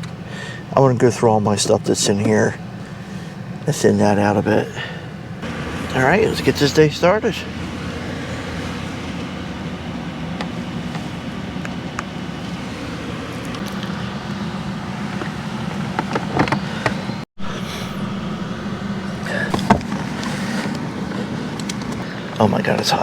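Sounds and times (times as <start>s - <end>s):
air conditioner humming: 0.0s - 23.0s
handling clicks and rustles: 15.0s - 17.2s.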